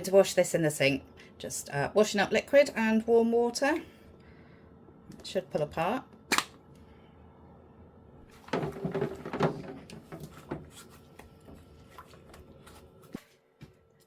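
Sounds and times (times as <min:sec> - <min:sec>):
plastic filter clattering: 0:08.4 - 0:10.8.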